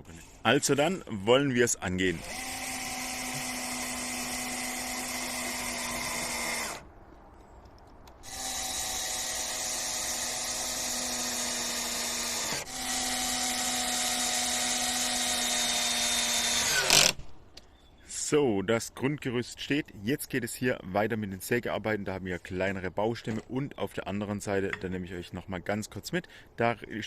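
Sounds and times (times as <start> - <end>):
electric drill running: 2.1 - 6.8, 8.2 - 17.2.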